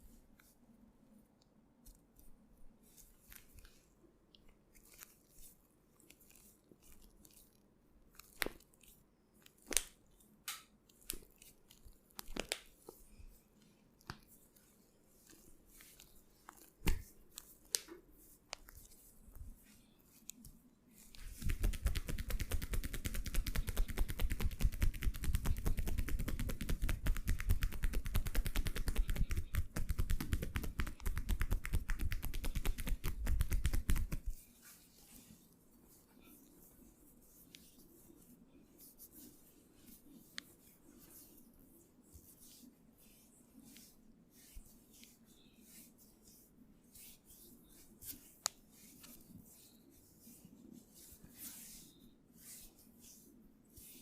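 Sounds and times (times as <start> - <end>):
rapid hand strokes patter: 21.0 - 54.0
soft taps on skin: 21.2 - 34.4.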